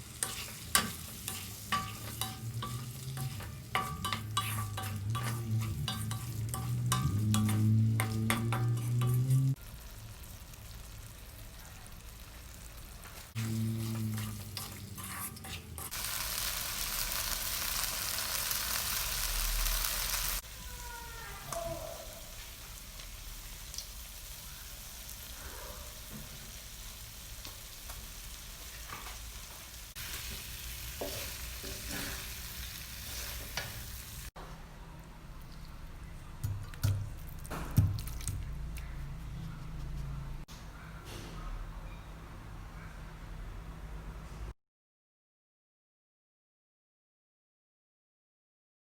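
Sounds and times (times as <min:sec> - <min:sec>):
spoon clicking and scraping a pan: 0:00.0 - 0:09.6, 0:13.8 - 0:16.0
chicken and spinach sizzling in a pan: 0:15.9 - 0:20.6, 0:22.0 - 0:34.4.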